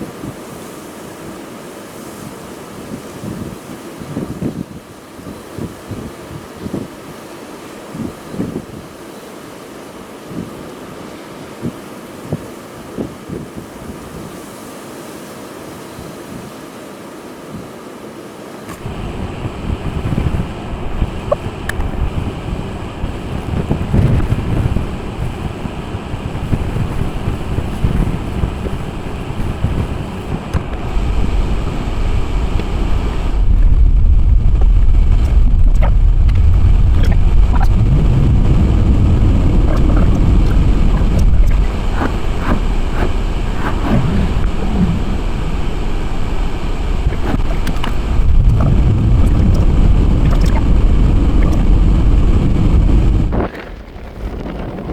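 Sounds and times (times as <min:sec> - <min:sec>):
wind buffeting microphone: 0:02.2 - 0:07.2, 0:07.9 - 0:09.0, 0:18.7 - 0:54.9.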